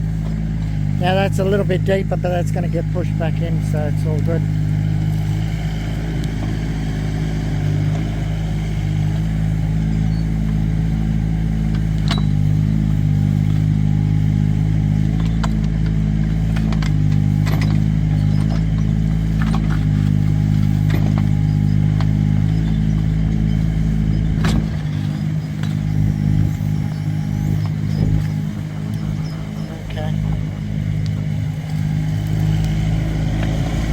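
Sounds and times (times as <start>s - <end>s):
excavator diesel engine running: 0.0s - 33.9s
excavator bucket clanking: 11.5s - 13.7s, 15.0s - 33.9s.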